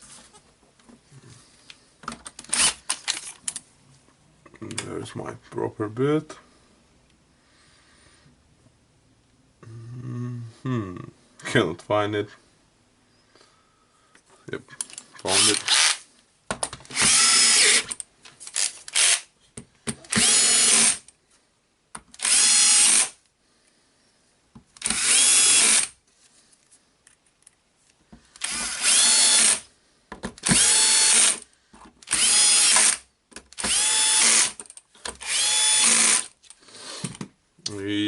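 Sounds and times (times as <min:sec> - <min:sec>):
cordless drill whining: 0:02.4 - 0:03.2, 0:15.3 - 0:16.0, 0:16.9 - 0:18.0, 0:18.6 - 0:19.3, 0:20.1 - 0:21.1, 0:22.1 - 0:23.2, 0:24.8 - 0:26.0, 0:28.4 - 0:29.7, 0:30.4 - 0:36.4.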